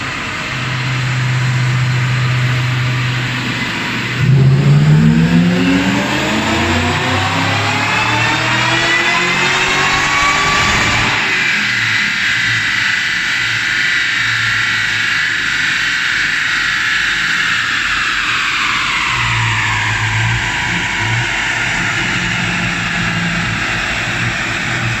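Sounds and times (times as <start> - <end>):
low engine hum: 0.0 - 12.1
supercharger whine: 0.0 - 25.0.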